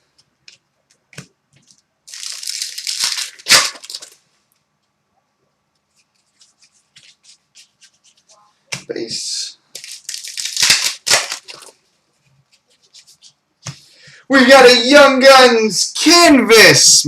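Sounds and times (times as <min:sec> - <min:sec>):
cards flipped through: 0:01.0 - 0:04.2, 0:05.9 - 0:08.9, 0:09.8 - 0:11.8
wrapper crinkling: 0:01.6 - 0:04.2, 0:09.7 - 0:11.8.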